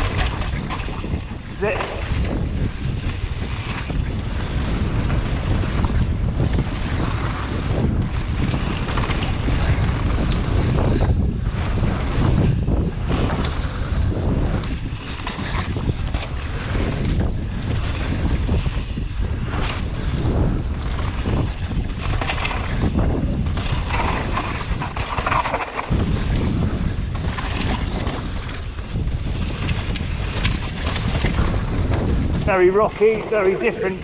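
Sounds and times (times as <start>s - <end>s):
bike knocks and rattles: 0.0s - 33.2s
bike tyres rolling over stones: 0.0s - 34.0s
wind over microphone: 0.0s - 34.0s.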